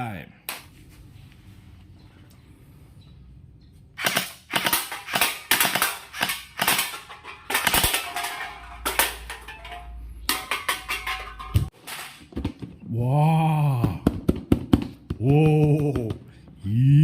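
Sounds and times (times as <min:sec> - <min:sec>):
toy blaster firing sharp shots: 0:04.0 - 0:08.1.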